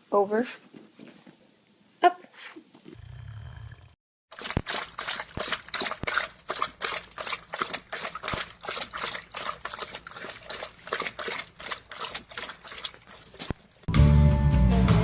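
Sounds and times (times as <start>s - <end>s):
water splashing and dripping: 4.3s - 13.9s.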